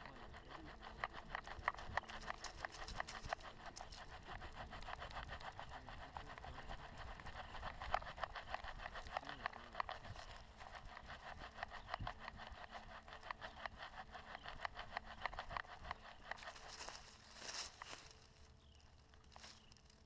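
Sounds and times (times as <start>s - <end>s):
footsteps crunching on trail: 16.4s - 20.0s.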